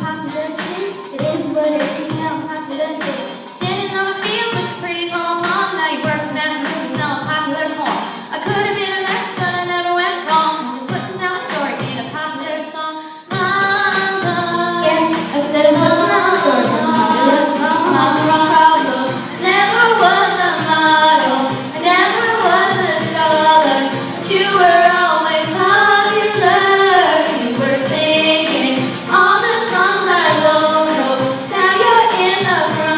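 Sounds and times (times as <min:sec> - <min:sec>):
children singing: 0:13.5 - 0:32.9.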